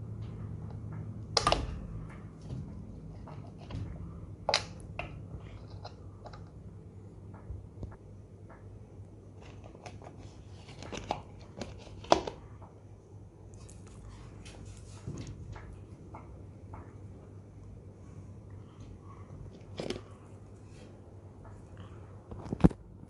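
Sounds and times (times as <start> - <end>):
ceiling fan motor humming: 0.0 - 23.0
rustling handling noises: 9.4 - 12.4.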